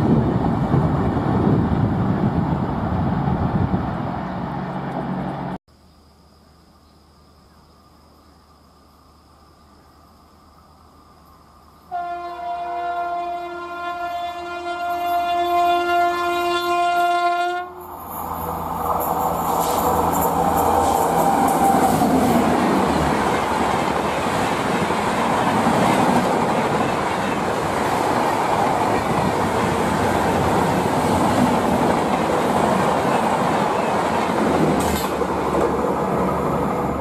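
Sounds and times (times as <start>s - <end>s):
train wheels rushing on rails: 17.8s - 37.0s
clickety-clack over rail joints: 22.6s - 36.9s.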